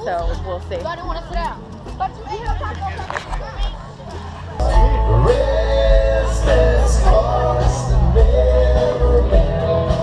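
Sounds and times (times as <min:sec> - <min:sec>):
loud music with heavy bass: 0:04.6 - 0:10.0
person singing: 0:04.6 - 0:10.0.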